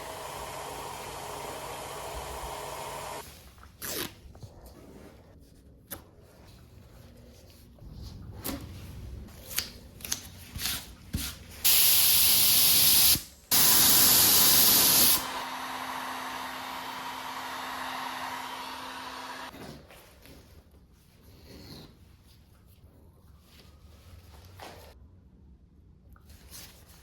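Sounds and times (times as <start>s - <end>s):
spray paint hissing: 11.6s - 15.2s.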